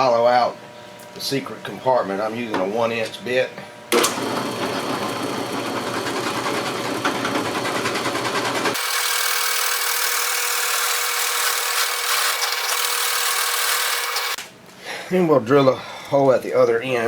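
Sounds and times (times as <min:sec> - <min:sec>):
power drill boring into wood: 0:04.0 - 0:14.4.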